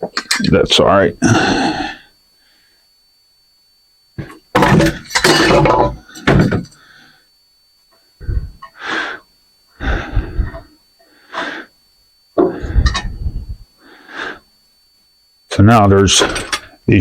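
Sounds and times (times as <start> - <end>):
metal fan parts clanking: 4.2 - 6.8, 12.4 - 13.2.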